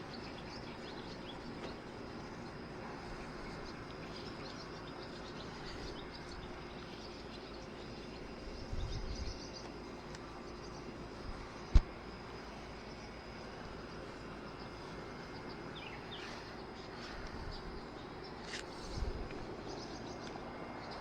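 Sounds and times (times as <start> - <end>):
insect drone: 0.0 - 21.0
bird chirps: 14.5 - 19.0.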